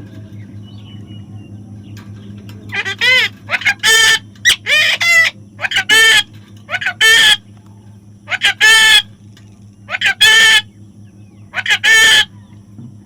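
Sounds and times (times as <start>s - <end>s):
parrot squawking: 2.7s - 7.5s, 8.3s - 9.1s, 9.9s - 10.7s, 11.5s - 12.4s.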